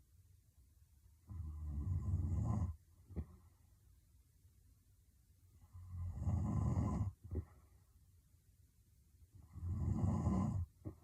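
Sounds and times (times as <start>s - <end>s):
quiet breathing: 1.2s - 4.0s, 5.4s - 8.2s, 9.3s - 11.0s
heavy snore: 1.3s - 2.8s, 5.7s - 7.2s, 9.4s - 10.7s.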